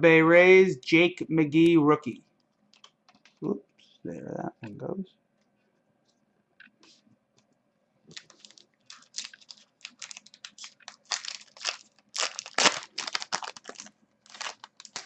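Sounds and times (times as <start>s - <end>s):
foil wrapper crinkling and tearing: 8.1s - 15.0s.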